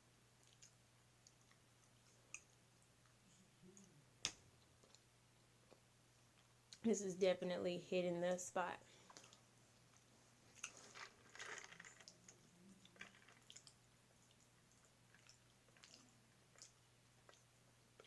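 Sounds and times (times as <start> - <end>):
wet chewing mouth smacks: 0.4 - 4.0, 9.1 - 18.0.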